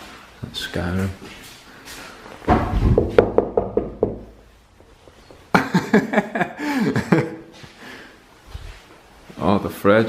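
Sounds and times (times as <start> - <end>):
people laughing: 5.5 - 7.6.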